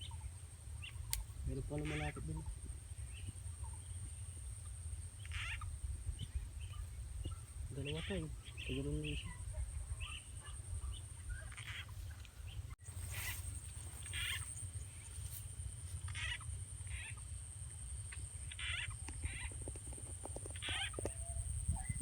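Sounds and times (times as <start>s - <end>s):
frogs croaking: 0.0s - 12.0s, 12.8s - 22.0s
high insect trill: 12.8s - 22.0s.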